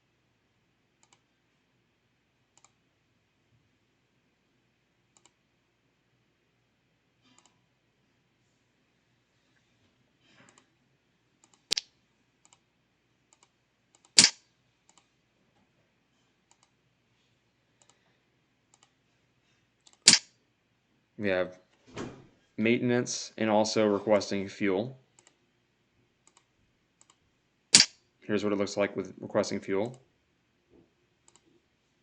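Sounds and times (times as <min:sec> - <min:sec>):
computer mouse clicks: 0:01.0 - 0:01.3, 0:02.5 - 0:02.8, 0:05.1 - 0:05.4, 0:07.2 - 0:07.6, 0:11.4 - 0:12.7, 0:13.3 - 0:15.1, 0:16.5 - 0:16.8, 0:17.8 - 0:18.0, 0:18.7 - 0:19.0, 0:19.8 - 0:20.2, 0:25.2 - 0:25.4, 0:26.2 - 0:27.2, 0:31.2 - 0:31.5.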